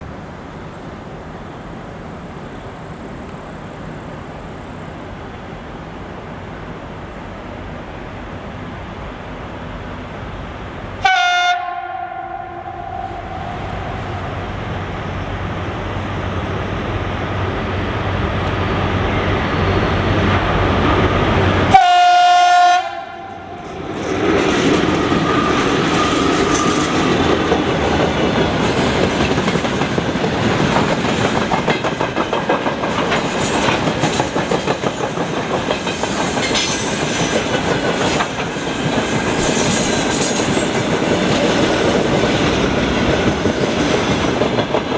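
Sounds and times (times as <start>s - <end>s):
locomotive horn blasts: 11.0s - 14.2s, 21.7s - 23.6s.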